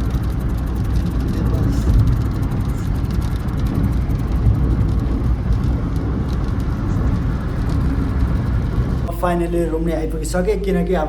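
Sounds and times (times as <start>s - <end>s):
vehicle rumbling: 0.0s - 11.0s.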